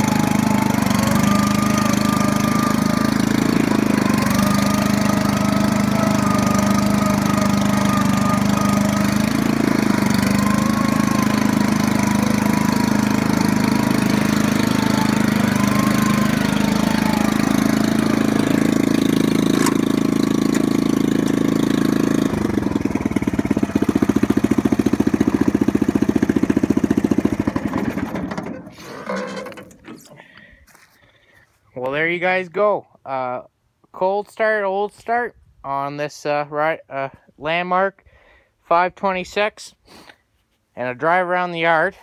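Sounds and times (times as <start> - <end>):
riding mower engine running: 0.0 - 30.7.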